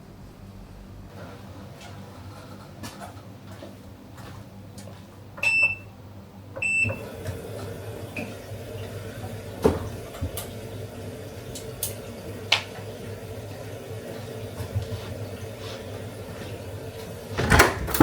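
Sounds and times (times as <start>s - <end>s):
appliance low hum: 0.0s - 18.0s
appliance beeps: 5.4s - 9.0s.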